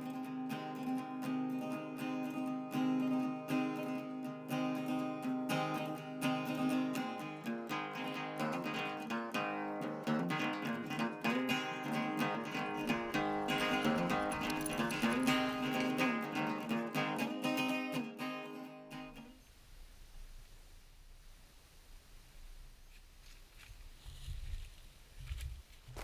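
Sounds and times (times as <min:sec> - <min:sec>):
acoustic guitar strumming chords: 0:00.0 - 0:19.4.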